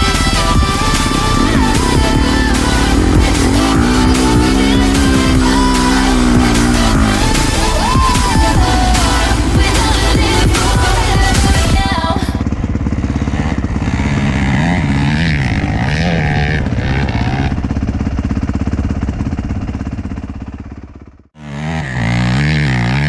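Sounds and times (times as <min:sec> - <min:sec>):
dirt bike engine revving: 0:00.0 - 0:23.0
dirt bike engine starting: 0:00.0 - 0:23.0.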